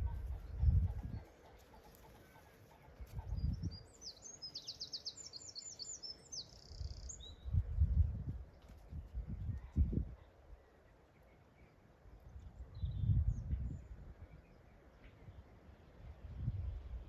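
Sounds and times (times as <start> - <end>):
small songbird singing: 3.1 - 7.6.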